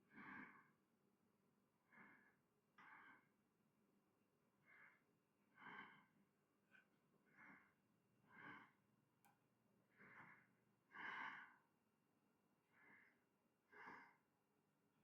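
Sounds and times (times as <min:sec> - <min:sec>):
soft breathing: 0:00.1 - 0:00.8, 0:01.8 - 0:03.4, 0:04.6 - 0:08.9, 0:09.9 - 0:11.7, 0:12.7 - 0:14.3.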